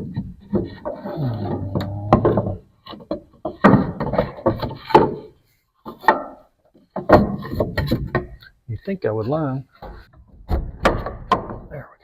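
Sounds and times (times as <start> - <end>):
wooden board creaking and scraping: 0.0 - 8.5.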